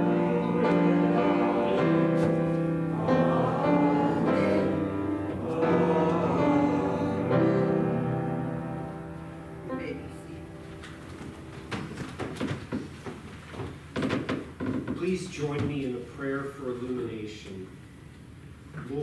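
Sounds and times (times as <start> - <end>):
sustained keyboard chords: 0.0 - 11.8.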